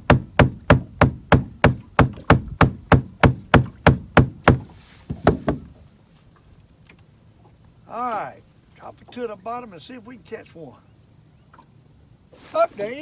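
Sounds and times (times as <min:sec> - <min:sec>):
sharp knocks: 0:00.0 - 0:05.7.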